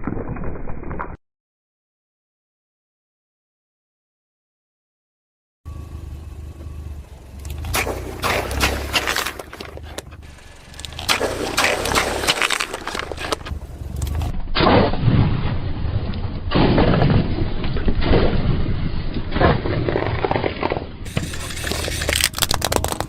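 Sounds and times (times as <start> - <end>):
plastic toy vehicles clattering: 7.5 - 14.3, 19.8 - 23.0.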